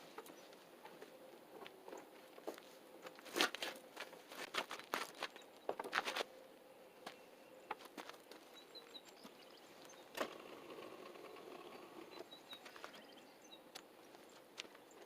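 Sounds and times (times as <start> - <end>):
high bird chirps: 8.5 - 13.8.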